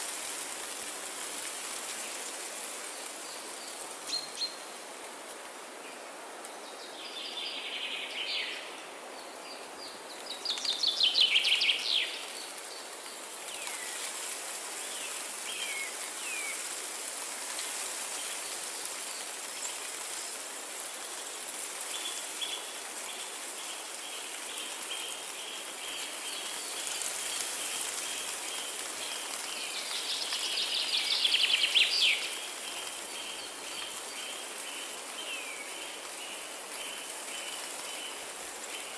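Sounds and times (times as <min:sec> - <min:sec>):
steady rain: 0:00.0 - 0:38.9
songbirds singing: 0:06.6 - 0:14.1, 0:21.9 - 0:38.9.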